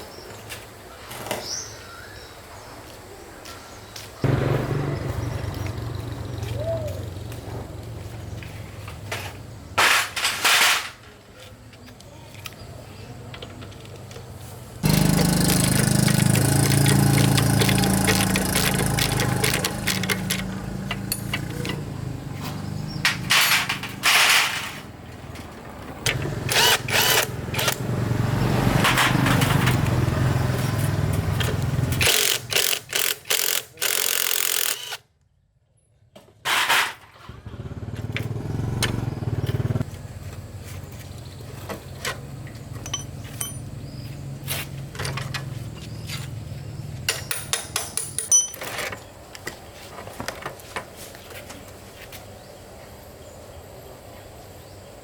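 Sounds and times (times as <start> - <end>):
small motorbike engine running: 4.2 - 9.1, 14.8 - 24.3, 26.1 - 35.0, 37.2 - 47.0
clattering noise: 14.8 - 26.5.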